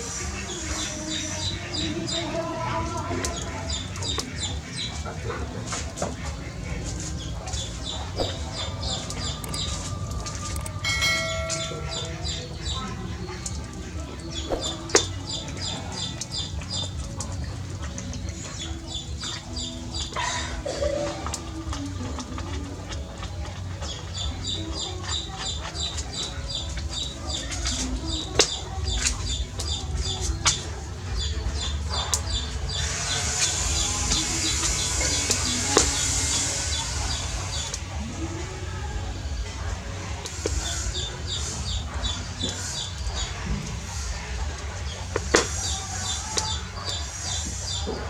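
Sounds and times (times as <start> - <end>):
birds chirping: 0.0 - 48.0
metallic ring: 10.6 - 12.9.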